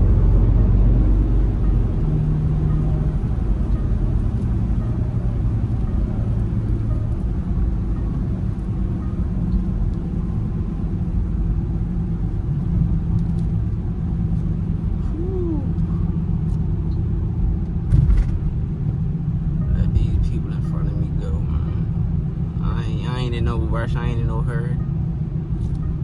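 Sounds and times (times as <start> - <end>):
car engine and road noise: 0.0 - 26.0
thump: 17.9 - 18.4.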